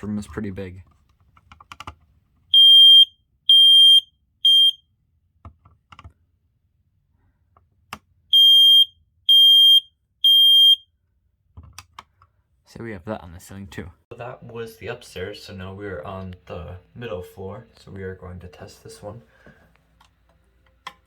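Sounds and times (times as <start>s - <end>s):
smoke detector beeping: 2.6s - 4.8s, 8.4s - 10.8s.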